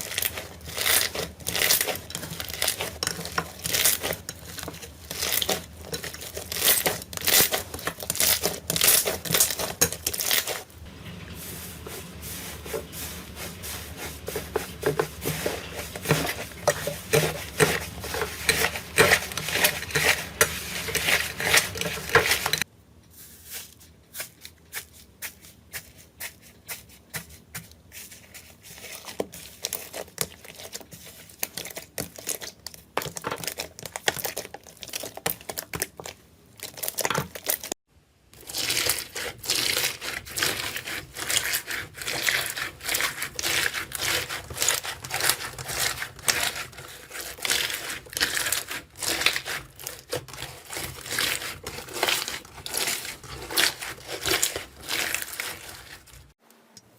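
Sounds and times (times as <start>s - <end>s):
slime crackling and popping: 0.0s - 10.6s.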